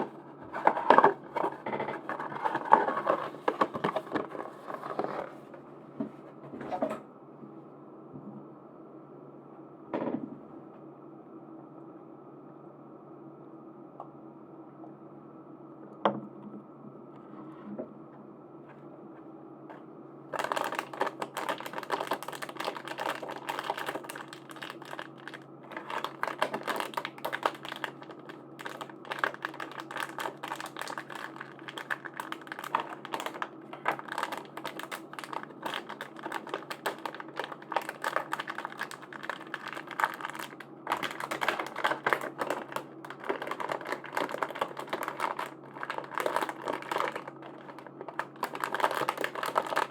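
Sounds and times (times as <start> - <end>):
plastic packaging crackling: 0.0 - 5.4, 20.3 - 49.9.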